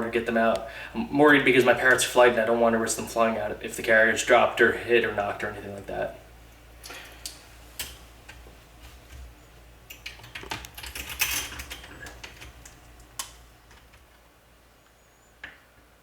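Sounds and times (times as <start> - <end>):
clatter of plastic parts: 9.9 - 12.8.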